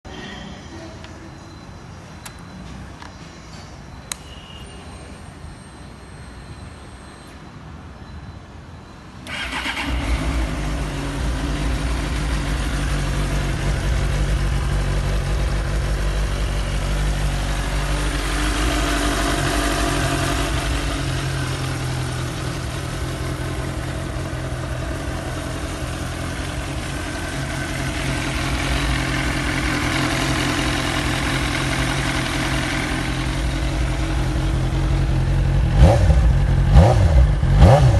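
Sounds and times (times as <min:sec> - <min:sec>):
motorcycle engine idling: 0:09.3 - 0:37.9.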